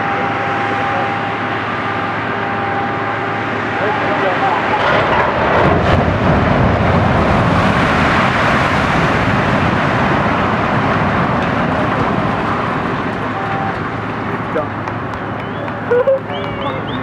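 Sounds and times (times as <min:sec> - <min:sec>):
building collapsing rumble: 0:03.4 - 0:17.0.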